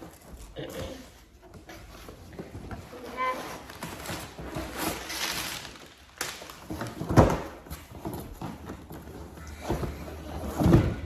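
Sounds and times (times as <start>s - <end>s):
package rustling: 3.6s - 6.8s.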